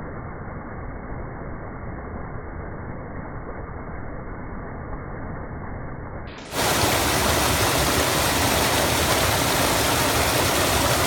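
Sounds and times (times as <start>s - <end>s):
creek water rushing over rocks: 6.4s - 11.0s.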